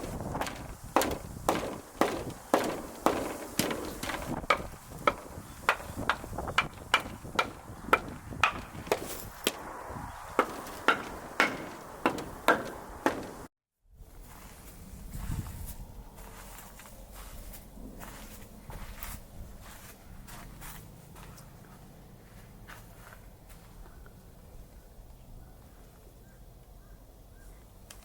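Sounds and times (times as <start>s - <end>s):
sharp wooden knocks: 0.0s - 9.7s, 10.3s - 13.5s.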